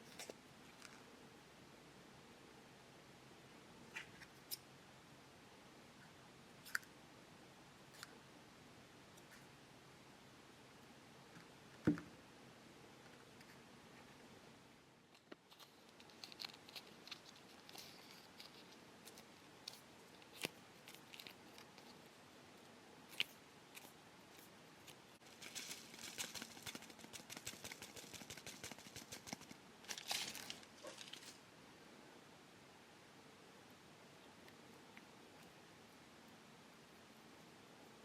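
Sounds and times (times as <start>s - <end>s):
plastic packets crinkling: 15.2s - 19.2s, 25.2s - 31.4s.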